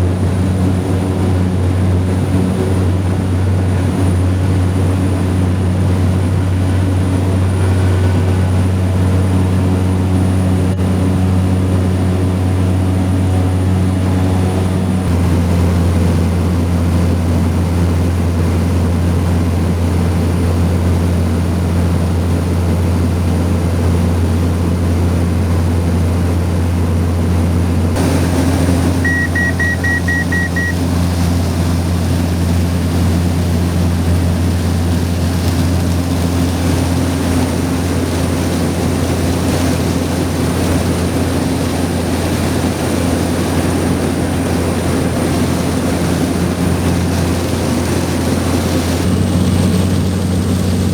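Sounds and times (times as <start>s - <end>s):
propeller plane engine drone: 0.0s - 50.9s
quick electronic beeps: 29.0s - 30.8s.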